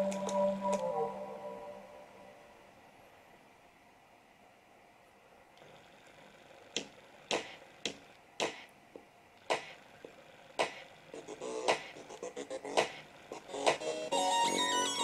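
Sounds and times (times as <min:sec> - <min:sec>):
percussive clicks on a beat: 0:06.8 - 0:09.7, 0:10.6 - 0:10.8, 0:11.7 - 0:12.0.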